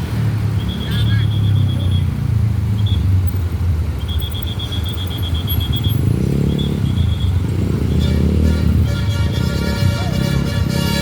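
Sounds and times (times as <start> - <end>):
bus engine rumbling: 0.0 - 11.0.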